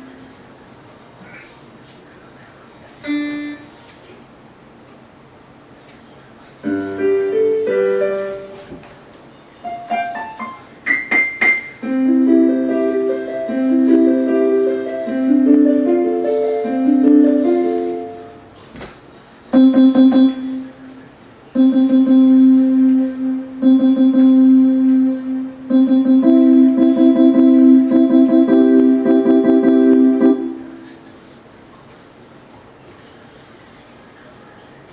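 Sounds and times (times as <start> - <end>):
electronic keyboard piano notes: 3.0 - 3.9, 6.6 - 18.6, 19.5 - 31.3.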